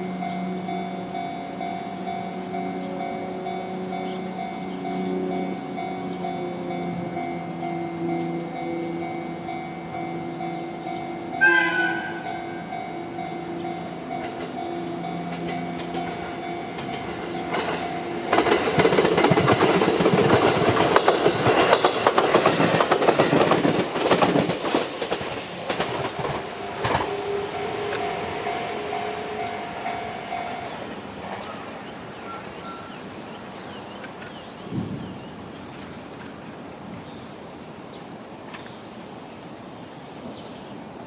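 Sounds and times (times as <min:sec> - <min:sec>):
train horn blast: 0:00.0 - 0:09.5, 0:11.3 - 0:14.2, 0:26.5 - 0:30.8
crossing warning bell ringing: 0:00.0 - 0:22.4, 0:26.5 - 0:31.6
train wheels clattering over rail joints: 0:14.1 - 0:27.2.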